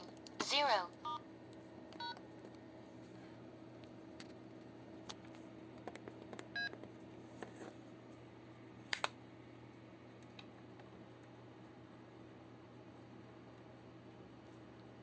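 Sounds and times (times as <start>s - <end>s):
keypad beep: 2.0s - 2.2s.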